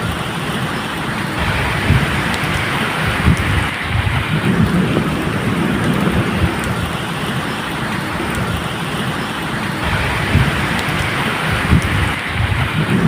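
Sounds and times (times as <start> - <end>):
steady rain falling: 0.0 - 13.0
low rumble: 1.4 - 7.0, 9.8 - 13.0.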